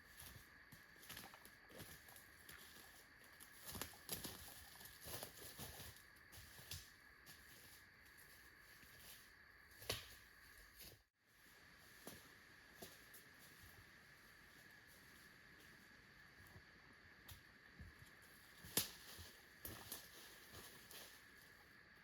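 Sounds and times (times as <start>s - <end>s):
twig snapping: 18.6s - 19.0s.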